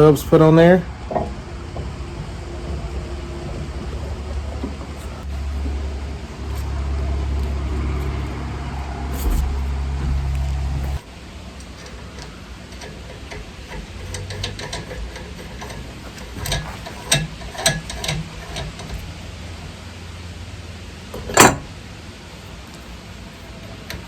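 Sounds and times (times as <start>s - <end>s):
metal parts clinking: 9.1s - 11.0s, 11.6s - 19.1s, 21.1s - 21.7s.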